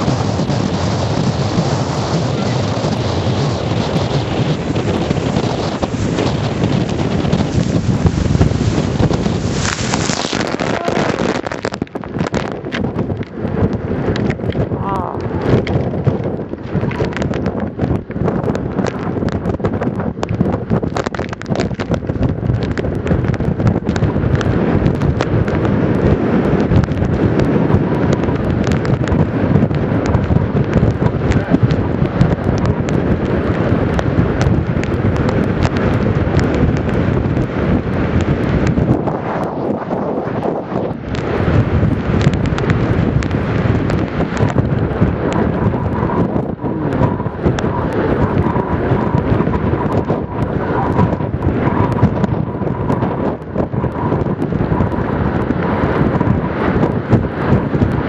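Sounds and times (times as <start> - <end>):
waves breaking: 0.0 - 15.8
storm waves surf: 0.0 - 58.0
wind buffeting microphone: 0.0 - 58.0.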